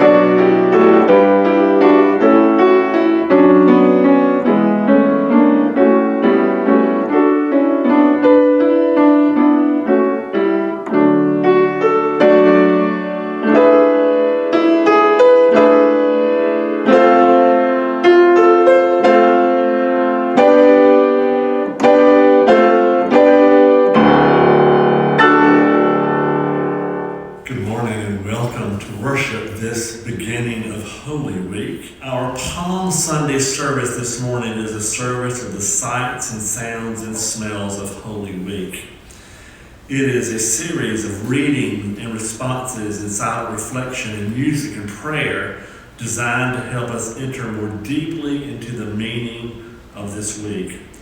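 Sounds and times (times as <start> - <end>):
solo piano playing: 0.0 - 37.5.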